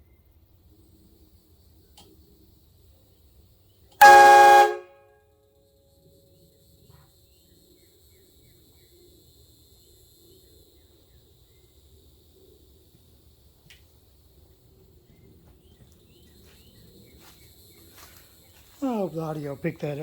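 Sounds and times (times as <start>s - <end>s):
air horn chord blast: 4.0s - 5.0s.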